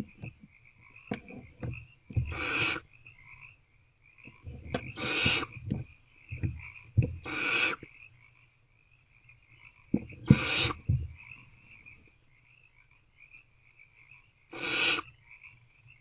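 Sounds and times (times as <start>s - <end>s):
owlets hissing begging calls: 2.2s - 2.8s, 4.8s - 5.6s, 7.2s - 7.9s, 10.2s - 11.0s, 14.5s - 15.1s.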